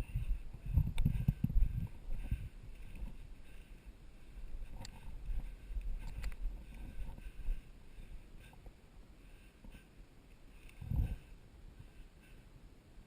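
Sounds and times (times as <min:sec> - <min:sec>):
wind buffeting microphone: 0:00.0 - 0:03.4, 0:10.8 - 0:11.3.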